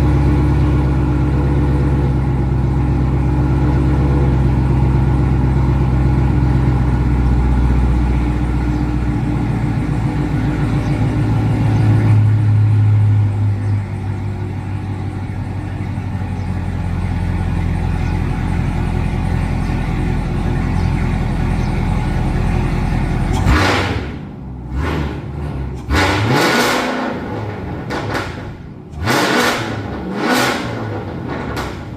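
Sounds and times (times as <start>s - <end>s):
car engine steady drone: 0.0s - 31.9s
loud exhaust bursts: 23.2s - 31.8s.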